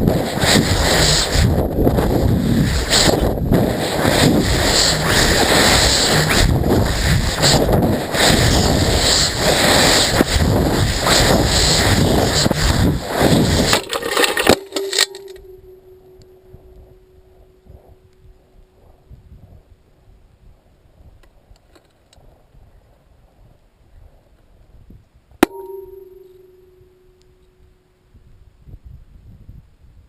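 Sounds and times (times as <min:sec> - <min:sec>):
rocket motor roar: 0:00.0 - 0:13.7
faint steady tone: 0:13.8 - 0:19.8, 0:25.4 - 0:28.8.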